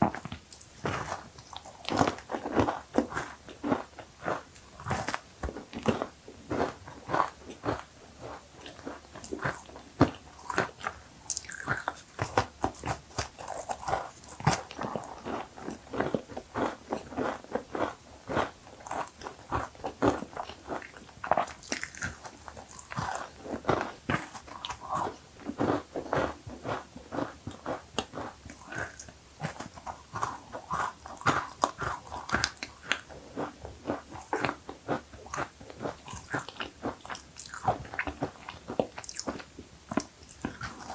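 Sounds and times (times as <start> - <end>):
crunchy cookie bites and chewing: 0.0 - 40.9.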